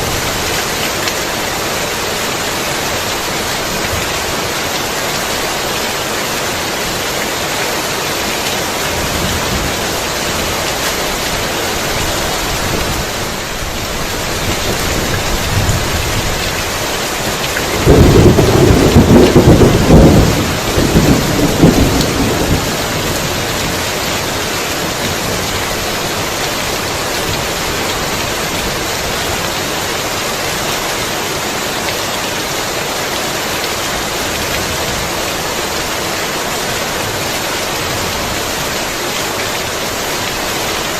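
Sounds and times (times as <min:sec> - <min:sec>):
heavy rain: 0:00.0 - 0:40.9
thunder rumble: 0:17.6 - 0:23.6.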